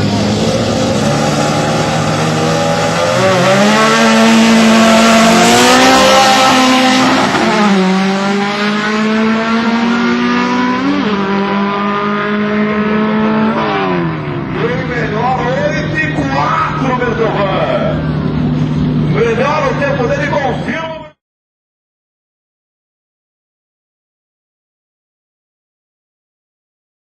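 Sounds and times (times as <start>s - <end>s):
drag racing car accelerating: 0.0s - 21.0s.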